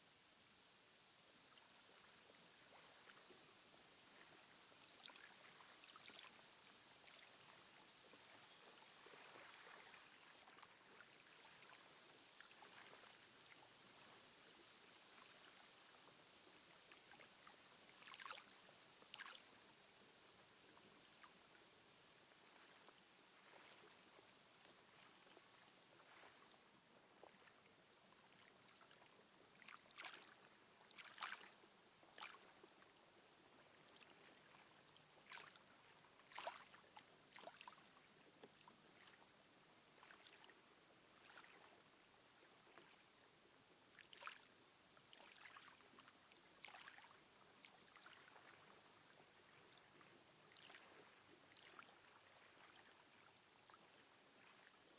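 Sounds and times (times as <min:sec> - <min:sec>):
lake water lapping: 0:04.1 - 0:06.4, 0:07.0 - 0:14.6, 0:16.9 - 0:19.7, 0:28.3 - 0:31.6, 0:32.2 - 0:32.6, 0:35.2 - 0:39.2, 0:40.0 - 0:40.6, 0:45.1 - 0:54.8
small sharp water splashes: 0:04.2 - 0:06.4, 0:07.0 - 0:07.6, 0:17.9 - 0:19.6, 0:29.6 - 0:31.6, 0:32.2 - 0:32.6, 0:35.2 - 0:37.9, 0:40.0 - 0:40.5, 0:41.2 - 0:41.7, 0:43.9 - 0:44.5, 0:45.1 - 0:48.7, 0:50.5 - 0:53.8.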